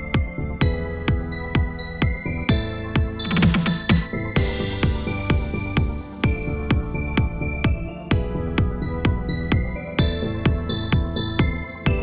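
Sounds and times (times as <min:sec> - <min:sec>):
electronic music: 0:00.0 - 0:12.0
kick drum: 0:00.0 - 0:12.0
drum roll: 0:03.2 - 0:05.4.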